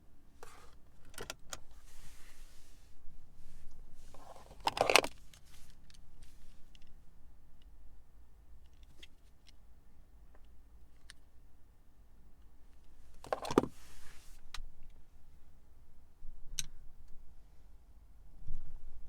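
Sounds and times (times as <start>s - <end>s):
soft rushing hiss: 1.7s - 4.2s, 13.7s - 14.5s.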